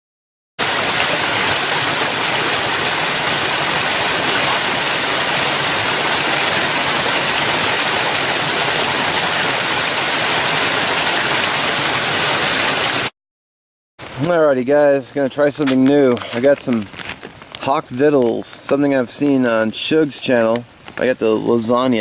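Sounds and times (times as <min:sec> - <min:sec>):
heavy rainfall hiss: 0:00.6 - 0:13.1.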